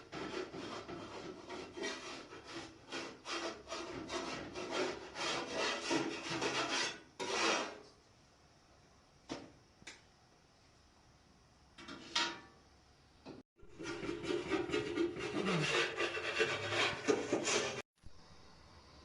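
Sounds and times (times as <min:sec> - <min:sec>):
gritty scraping on wood: 0:00.1 - 0:07.8, 0:13.8 - 0:17.8.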